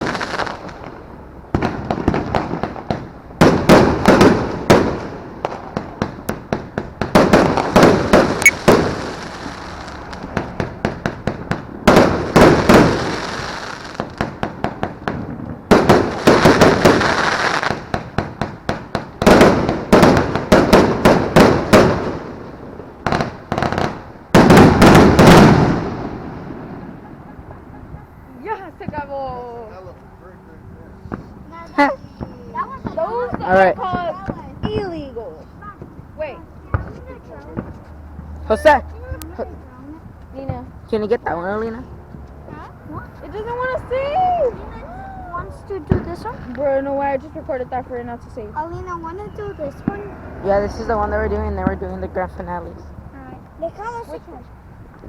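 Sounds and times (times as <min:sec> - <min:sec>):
fireworks crackling pops: 0:01.6 - 0:26.6, 0:32.0 - 0:36.0, 0:36.6 - 0:38.0, 0:45.8 - 0:47.3.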